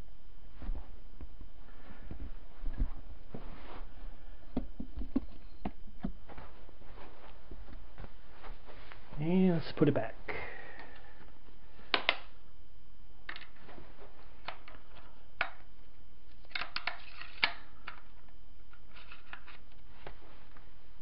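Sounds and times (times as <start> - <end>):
rifle parts clicking and knocking: 16.4 - 18.1.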